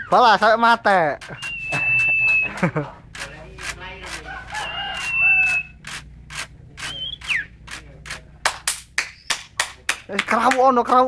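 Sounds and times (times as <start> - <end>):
songbird whistling: 0.0 - 0.2, 1.2 - 2.7, 4.4 - 5.8, 6.8 - 7.6, 9.0 - 9.5
sharp clicks: 1.2 - 9.6.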